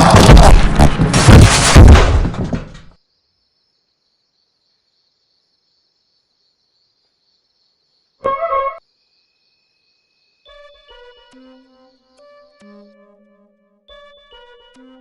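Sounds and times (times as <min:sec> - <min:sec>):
loud crash with breaking: 0:00.0 - 0:02.9
brief pitched tone: 0:08.2 - 0:08.8.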